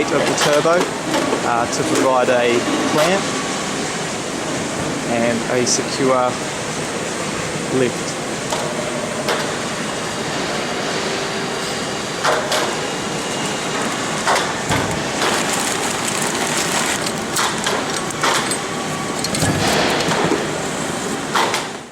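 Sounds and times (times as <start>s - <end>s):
workshop noise: 0.0s - 21.9s
metal parts knocking and clattering: 15.2s - 20.2s.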